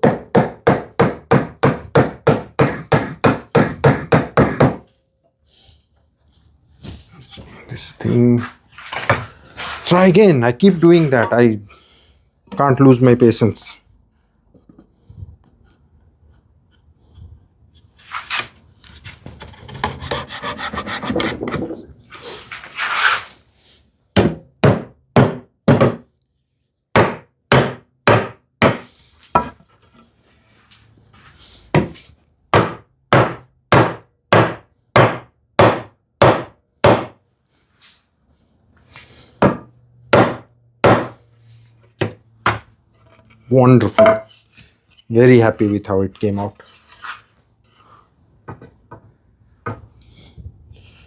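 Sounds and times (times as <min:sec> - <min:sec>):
hammer knocking on wood: 0:00.0 - 0:04.9, 0:24.2 - 0:26.0, 0:27.0 - 0:28.8, 0:32.6 - 0:37.2, 0:39.4 - 0:41.2, 0:43.8 - 0:44.3
wood scraping and rubbing: 0:06.8 - 0:11.5, 0:18.0 - 0:23.4.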